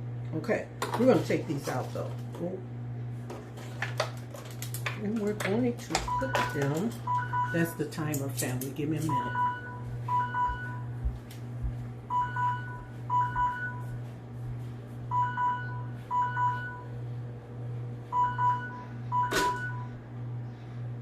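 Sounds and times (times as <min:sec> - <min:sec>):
steady low hum: 0:00.0 - 0:21.0
kitchen timer alarm beeping: 0:06.0 - 0:07.9, 0:09.0 - 0:11.0, 0:12.1 - 0:13.9, 0:15.1 - 0:16.9, 0:18.1 - 0:19.9.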